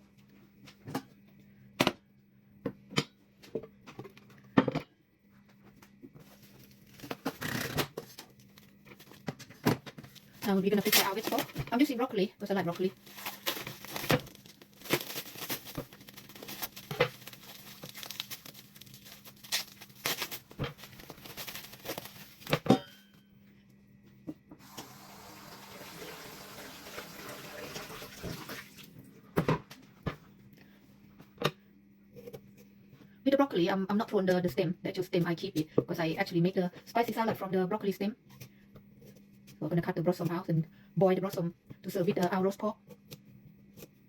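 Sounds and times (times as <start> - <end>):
tap running water: 24.6 - 28.9.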